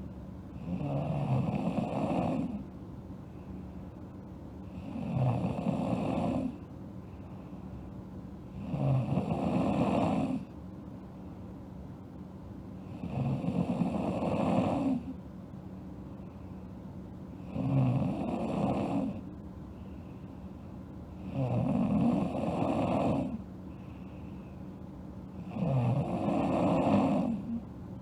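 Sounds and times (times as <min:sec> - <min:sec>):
girl snoring: 0:00.6 - 0:02.6, 0:04.7 - 0:06.6, 0:08.6 - 0:10.5, 0:12.9 - 0:15.2, 0:17.4 - 0:19.2, 0:21.2 - 0:23.4, 0:25.4 - 0:27.6.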